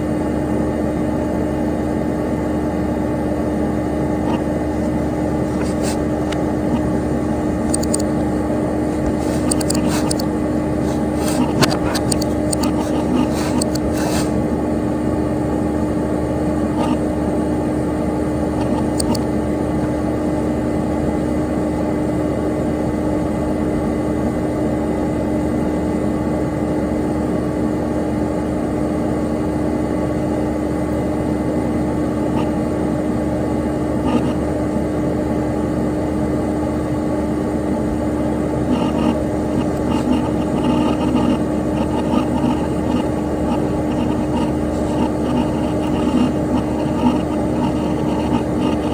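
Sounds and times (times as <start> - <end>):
computer fan and hard drive whir: 0.0 - 48.9
constant hum: 0.0 - 48.9
faint ticks: 7.7 - 8.1.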